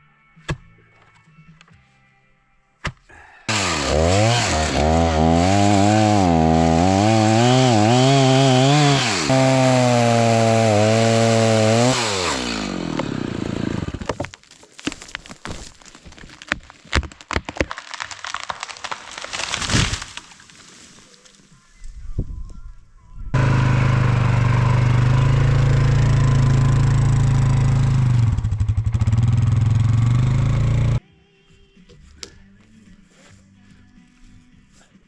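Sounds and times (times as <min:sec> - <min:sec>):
chainsaw cutting log: 0:03.5 - 0:20.7, 0:23.4 - 0:31.0.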